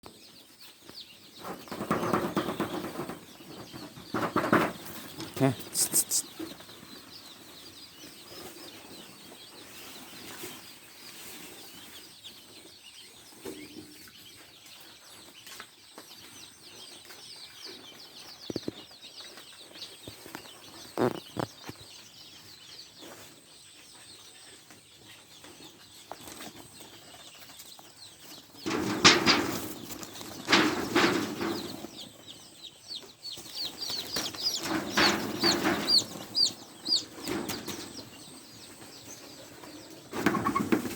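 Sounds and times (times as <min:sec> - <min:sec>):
chicken commotion: 0:00.0 - 0:40.9
chickens chirping: 0:00.0 - 0:40.9.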